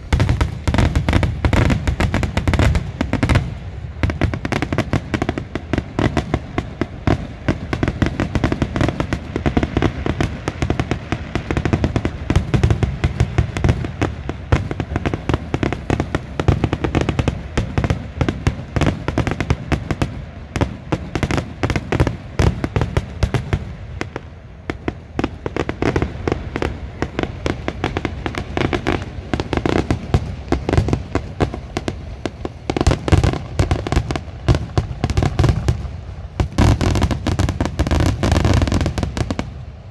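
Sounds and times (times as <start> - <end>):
fireworks bangs and crackling: 0.0 - 39.9.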